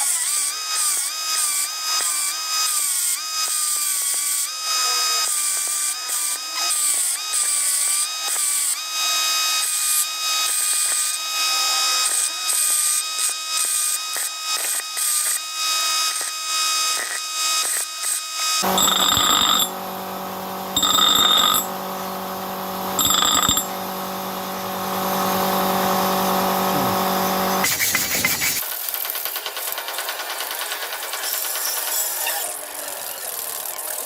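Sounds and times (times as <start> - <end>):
power tool motor whining: 10.6 - 28.6.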